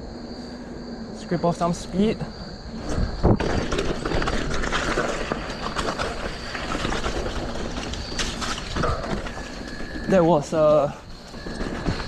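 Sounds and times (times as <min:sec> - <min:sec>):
bike tyres rolling over mud: 0:01.4 - 0:12.0
bike clicks and rattles: 0:02.8 - 0:12.0.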